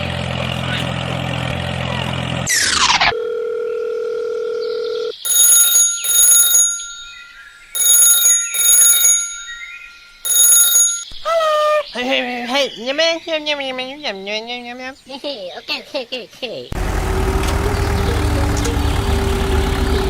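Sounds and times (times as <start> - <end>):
engine hum: 0.0 - 2.8, 16.8 - 20.0
telephone double ring: 3.2 - 11.1
held tone: 5.3 - 11.1.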